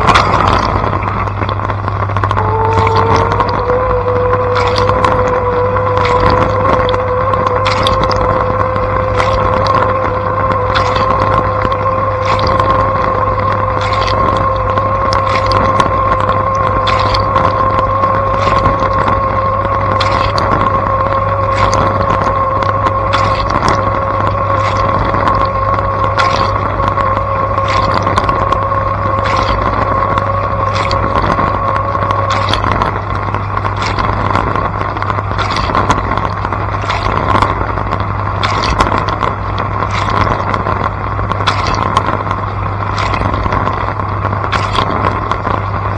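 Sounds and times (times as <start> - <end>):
dishwasher pump humming: 0.0 - 45.9
steady tone: 0.0 - 45.9
water splashing from spray arms: 0.0 - 45.9.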